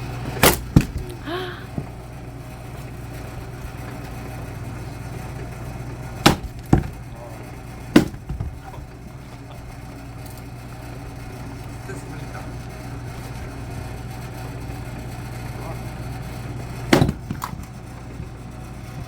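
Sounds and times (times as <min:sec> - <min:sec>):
steady low hum: 0:00.0 - 0:19.0
wood splitting cracks: 0:00.3 - 0:02.0, 0:06.0 - 0:09.4, 0:16.9 - 0:18.4.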